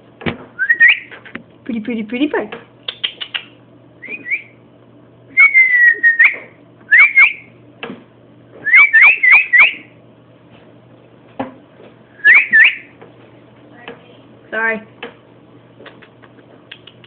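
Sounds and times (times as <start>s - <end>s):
pet bird whistling: 0.6s - 1.4s, 2.8s - 4.6s, 5.3s - 7.5s, 8.6s - 9.9s, 12.2s - 12.9s.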